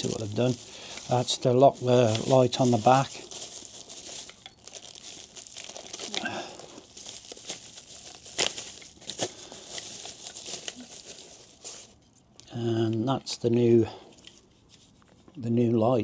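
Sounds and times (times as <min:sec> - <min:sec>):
packaging crinkling: 0:00.0 - 0:12.0.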